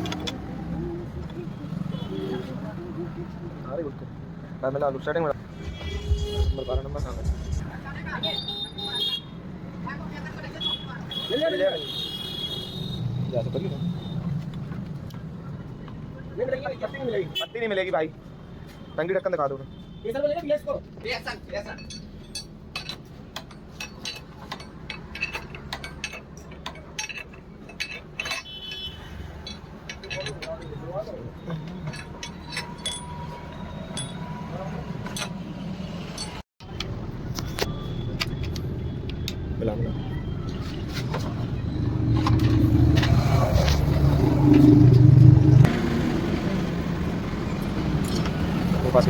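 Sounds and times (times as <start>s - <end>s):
vehicle engine humming: 5.4s - 8.6s, 33.3s - 49.0s
metal tools clinking: 21.6s - 36.4s.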